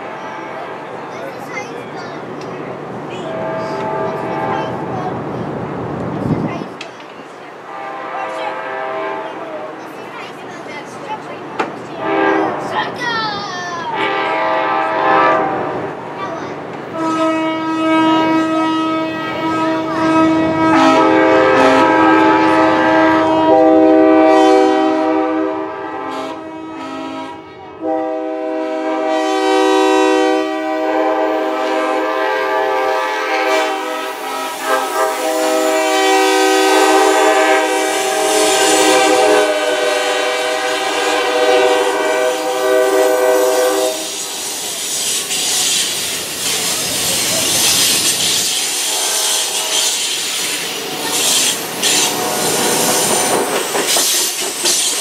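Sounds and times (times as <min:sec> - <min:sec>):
passing train rumble and clatter: 0:00.0 - 0:55.0
train air horn chords: 0:03.2 - 0:04.8, 0:07.7 - 0:09.4, 0:12.0 - 0:12.7, 0:13.9 - 0:16.0, 0:16.9 - 0:46.6, 0:47.5 - 0:55.0.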